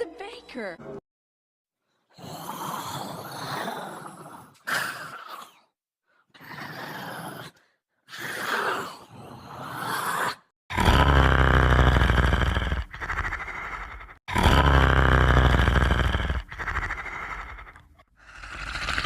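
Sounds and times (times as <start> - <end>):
creature breathy rasping exhalations: 2.0 - 19.0.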